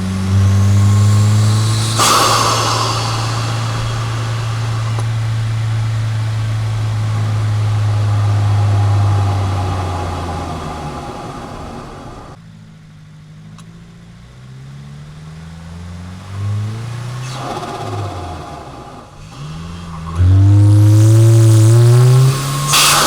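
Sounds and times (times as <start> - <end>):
bypass valve hiss: 0.0 - 12.4, 19.1 - 23.0
turbocharged car engine accelerating: 0.0 - 12.4, 13.6 - 23.0.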